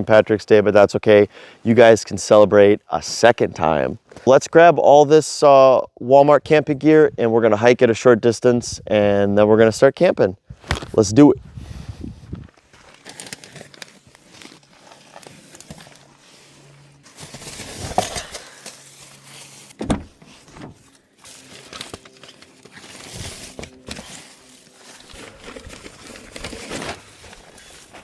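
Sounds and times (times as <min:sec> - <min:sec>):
plastic bags crinkling: 0:12.6 - 0:19.8, 0:20.4 - 0:28.0.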